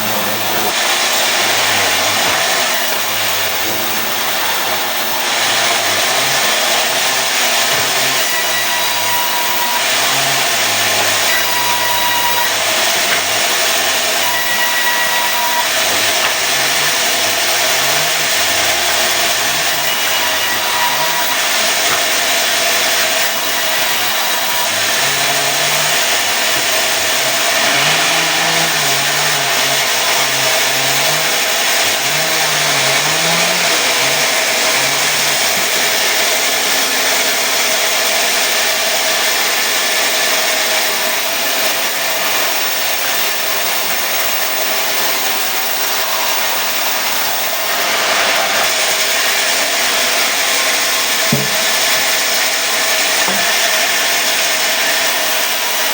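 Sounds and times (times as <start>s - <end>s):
sawmill saw cutting wood: 0.0s - 55.9s.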